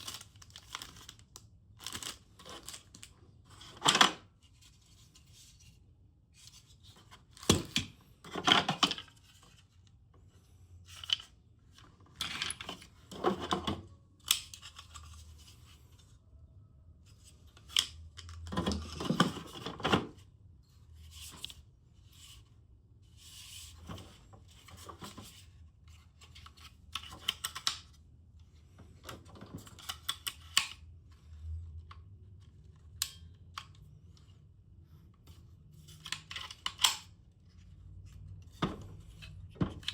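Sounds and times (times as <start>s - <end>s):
packaging rustling and tearing: 0.0s - 3.1s.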